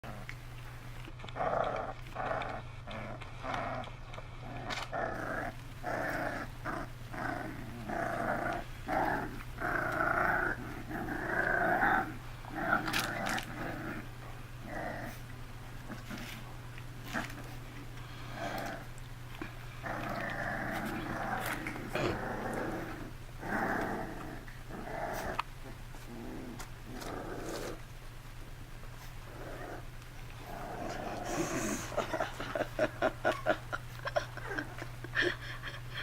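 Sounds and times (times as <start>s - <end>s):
puppies growling: 0.0s - 36.0s
steady low hum: 0.0s - 36.0s.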